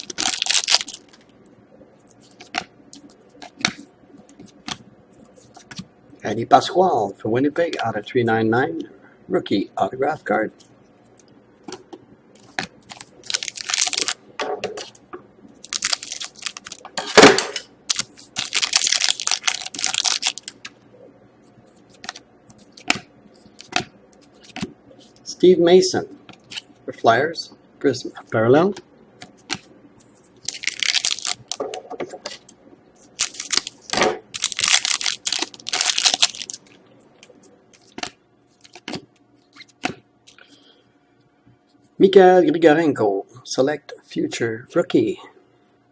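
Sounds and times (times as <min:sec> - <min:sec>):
card packaging crinkling and rustling: 0:00.0 - 0:01.3, 0:12.4 - 0:14.2, 0:15.6 - 0:20.7, 0:30.4 - 0:39.7.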